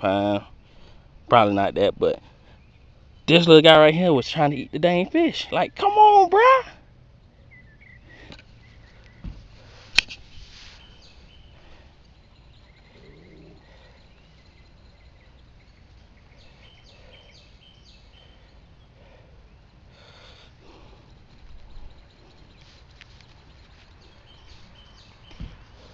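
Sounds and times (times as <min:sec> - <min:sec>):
high bird chirps: 0:07.2 - 0:09.3.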